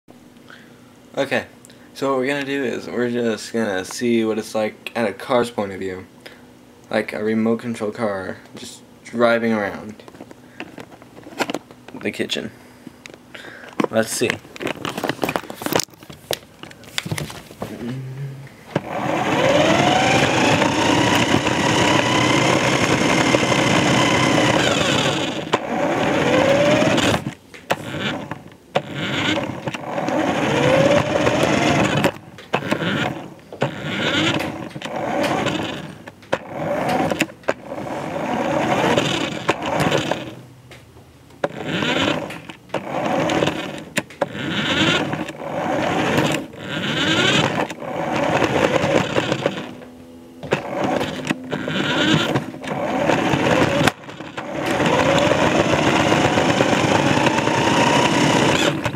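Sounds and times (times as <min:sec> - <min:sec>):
toy car motor whining: 0:18.8 - 0:40.4, 0:41.4 - 0:49.8, 0:50.4 - 0:58.9.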